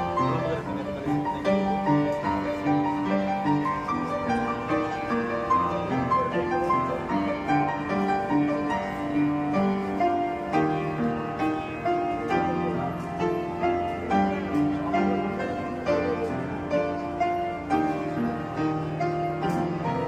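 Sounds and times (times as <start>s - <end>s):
instrumental music: 0.0s - 20.0s.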